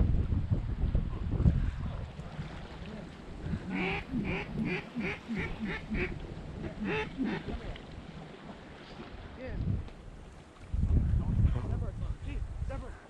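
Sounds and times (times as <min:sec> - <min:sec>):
low wind noise: 0:00.0 - 0:13.0
duck quacking: 0:03.6 - 0:07.5.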